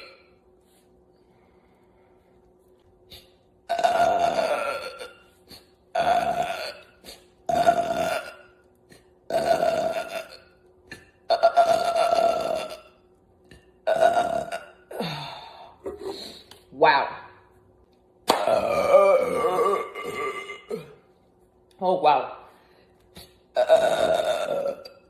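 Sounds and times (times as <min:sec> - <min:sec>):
woman belching: 0:03.7 - 0:05.3, 0:05.9 - 0:08.6, 0:09.2 - 0:13.0, 0:13.8 - 0:15.3, 0:18.3 - 0:21.0, 0:23.5 - 0:25.0.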